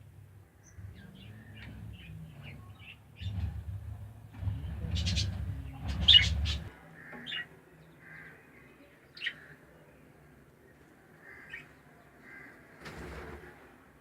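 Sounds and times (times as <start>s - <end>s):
low rumble: 0.6s - 6.7s
budgerigars chirping: 4.8s - 6.7s.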